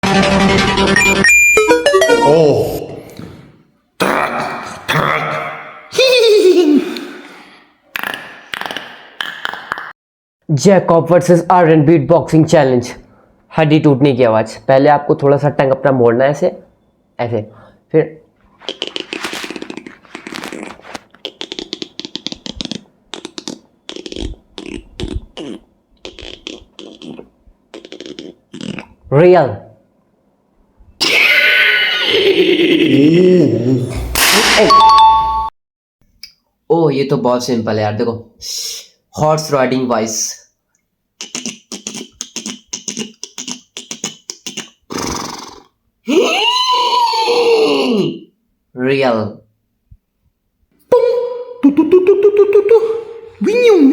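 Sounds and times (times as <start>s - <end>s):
person snorting: 2.6s - 9.9s, 41.2s - 45.7s
person imitating horse neigh: 4.0s - 7.3s, 31.0s - 34.0s, 41.2s - 48.2s
mouth clicks and pops: 7.9s - 10.0s, 18.6s - 29.0s, 41.2s - 45.8s.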